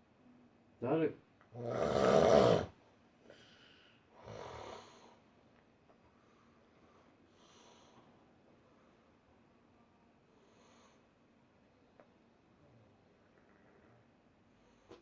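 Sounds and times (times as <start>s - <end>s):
person snoring: 1.6s - 2.8s.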